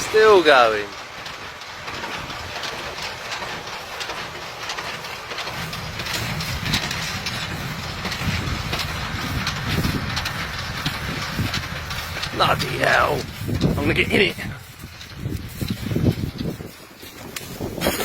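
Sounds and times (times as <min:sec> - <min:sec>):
small rattles and clatters: 0:00.0 - 0:18.0
strong wind gusting: 0:05.2 - 0:18.0.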